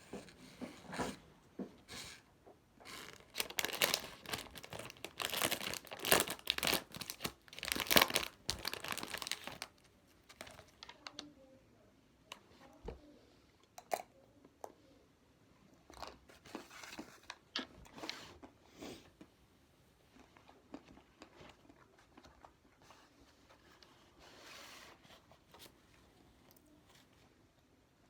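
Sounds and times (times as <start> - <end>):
crinkly packaging torn open: 2.9 - 11.2.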